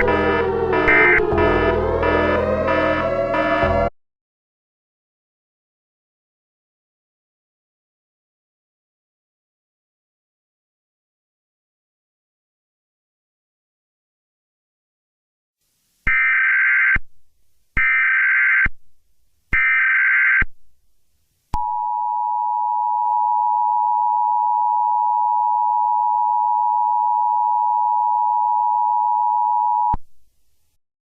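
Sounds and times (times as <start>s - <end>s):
data header bursts: 0.0s - 3.9s
two-tone attention signal: 0.0s - 3.9s.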